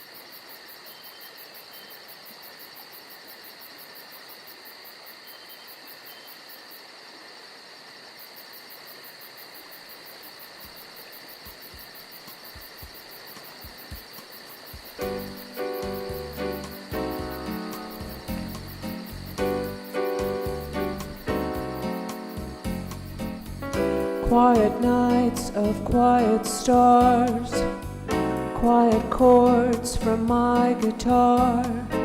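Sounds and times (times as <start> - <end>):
crickets chirping: 0.0 - 32.0
soft low thumps: 11.4 - 15.3.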